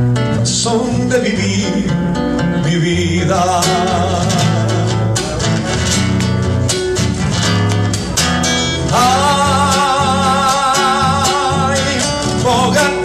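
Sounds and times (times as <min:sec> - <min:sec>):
acoustic guitar strumming: 0:00.0 - 0:13.0
person singing a ballad: 0:00.4 - 0:05.2, 0:08.9 - 0:13.0.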